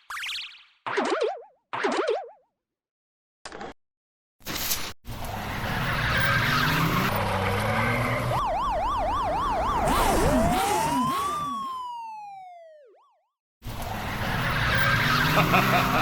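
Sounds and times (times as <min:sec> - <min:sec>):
rumbling vehicle noise: 0:05.1 - 0:11.4, 0:13.6 - 0:16.0
police car siren: 0:05.4 - 0:16.0.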